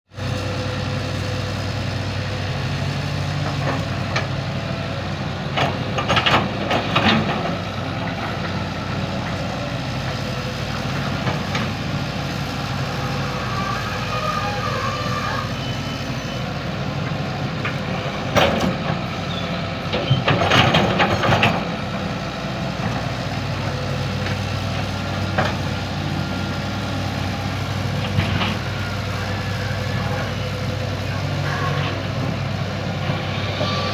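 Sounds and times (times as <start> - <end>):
excavator diesel engine running: 0.1 - 33.9
machine clanks and knocks: 17.6 - 19.0, 19.9 - 21.7.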